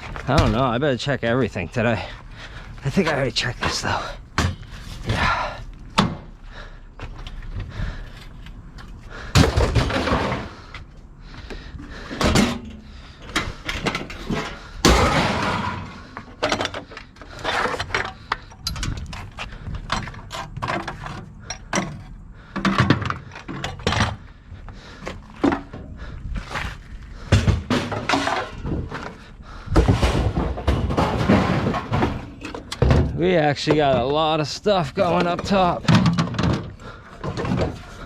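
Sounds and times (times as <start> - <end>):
scrap metal clanking and scraping: 8.2 - 11.0, 11.8 - 38.0
loud metal crash: 14.8 - 16.2.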